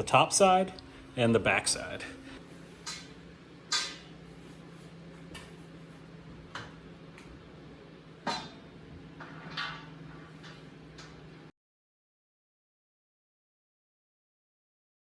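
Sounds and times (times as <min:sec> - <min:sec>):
faint steady hum: 0:00.0 - 0:11.5.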